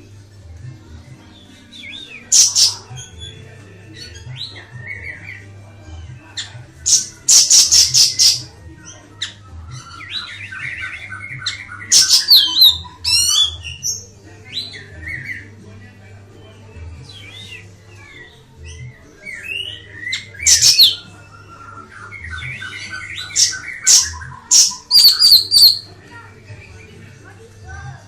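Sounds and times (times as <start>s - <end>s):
bird chattering and whistling: 1.8s - 2.8s, 6.8s - 8.4s, 10.1s - 14.0s, 19.4s - 21.0s, 22.1s - 25.9s.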